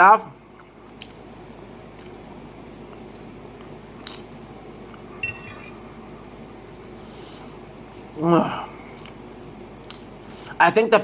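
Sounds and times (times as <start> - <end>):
person chewing food: 0.4 - 5.9, 8.8 - 10.2.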